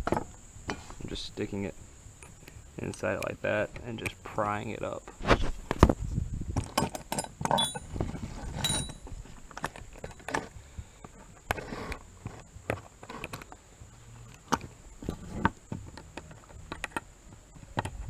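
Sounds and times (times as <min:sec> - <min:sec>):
wrench clinking on metal: 0:06.8 - 0:08.0, 0:08.6 - 0:09.1.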